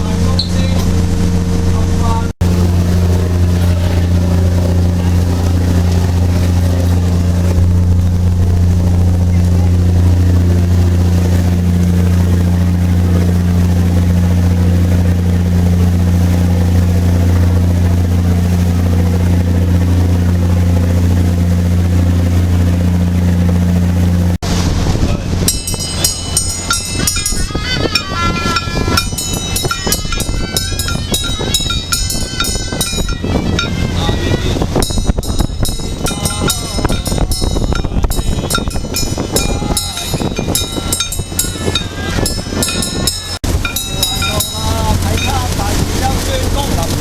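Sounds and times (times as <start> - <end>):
boat engine humming: 0.0 - 47.0
high notes over clattering strikes: 25.4 - 47.0.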